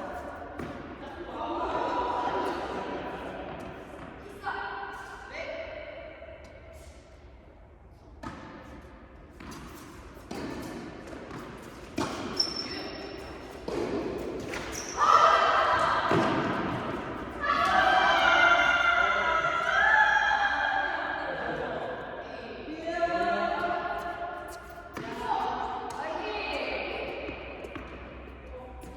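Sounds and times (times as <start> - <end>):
tennis balls struck and bouncing: 0.1 - 1.2, 8.2 - 14.8, 15.6 - 18.2.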